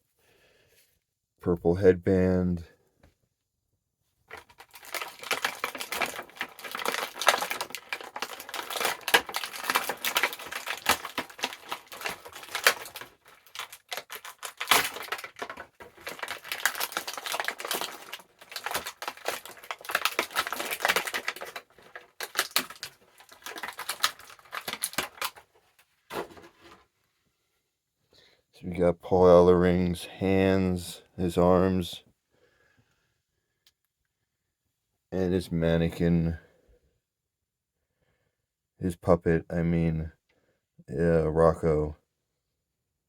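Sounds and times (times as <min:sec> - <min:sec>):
plastic and cardboard packaging crinkling: 0:04.3 - 0:26.9.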